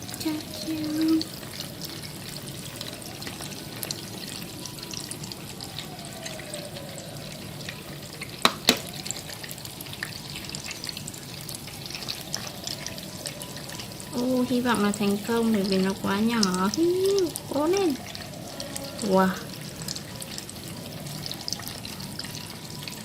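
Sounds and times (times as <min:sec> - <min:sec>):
pork rolls sizzling in hot oil: 0:00.0 - 0:23.0
utensil clicking against pan: 0:08.4 - 0:08.9.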